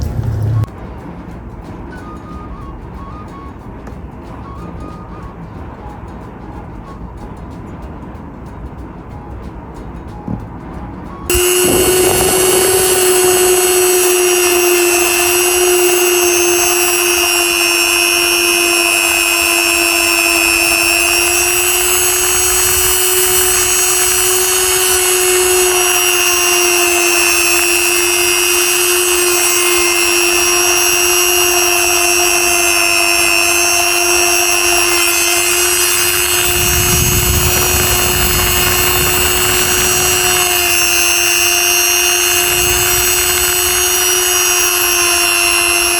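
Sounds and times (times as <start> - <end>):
low rumble: 0.0 - 1.9, 36.0 - 41.2
small power tool whine: 11.3 - 45.9.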